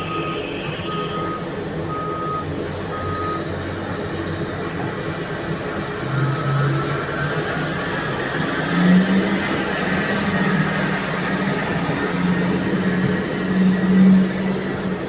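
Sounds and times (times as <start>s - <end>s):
reversing alarm beeping: 0.0s - 4.2s
diesel engines droning: 0.0s - 15.0s.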